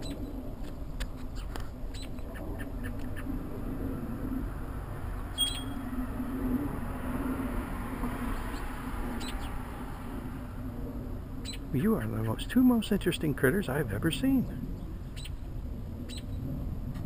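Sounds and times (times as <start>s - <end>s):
cranes gurgling calls: 1.4s - 7.0s
short high chirp: 5.4s - 5.8s.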